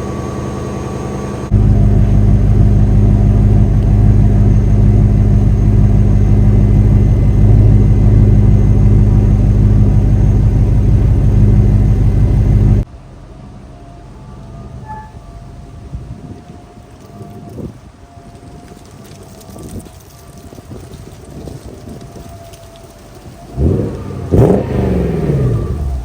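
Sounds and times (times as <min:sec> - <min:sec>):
car engine idling: 0:00.0 - 0:17.1, 0:23.5 - 0:26.0.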